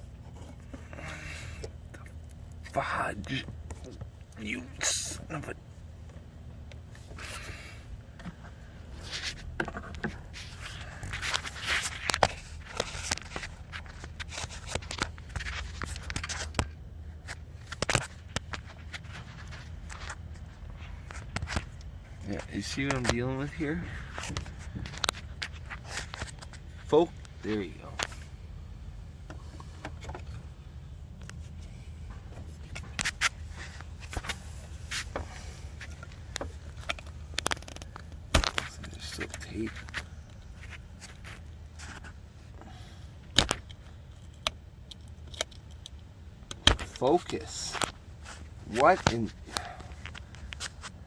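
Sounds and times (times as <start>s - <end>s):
steady low hum: 0.0s - 51.0s
tape scraping and clicking: 9.0s - 23.2s, 35.8s - 42.2s
hands peeling and cutting tape: 35.8s - 40.0s, 43.3s - 48.0s.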